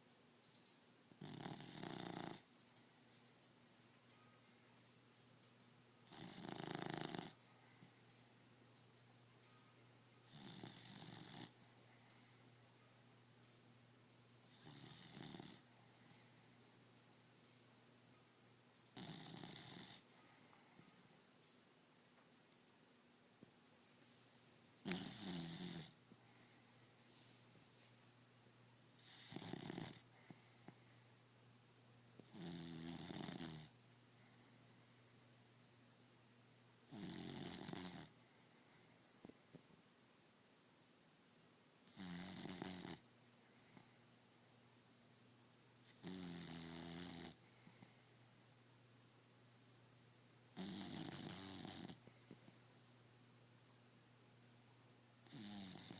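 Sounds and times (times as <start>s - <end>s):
person snoring: 1.2s - 2.4s, 6.1s - 7.4s, 24.8s - 26.0s, 29.0s - 30.0s, 36.9s - 38.1s, 55.3s - 55.9s
loud buzzing snores: 1.2s - 2.5s, 6.1s - 7.4s, 10.3s - 11.6s, 14.5s - 15.6s, 19.0s - 20.1s, 24.8s - 26.0s, 29.0s - 30.4s, 32.2s - 33.8s, 36.9s - 38.2s, 41.9s - 43.0s, 45.8s - 47.8s, 50.6s - 52.0s, 55.2s - 55.9s.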